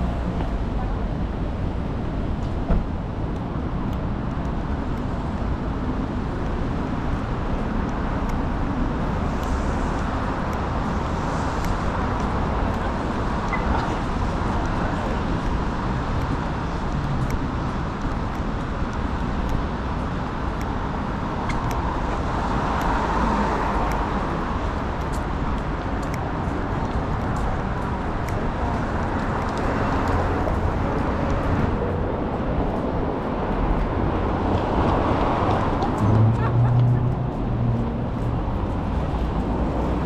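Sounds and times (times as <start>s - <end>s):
tyres hissing on wet road: 11.0s - 13.4s.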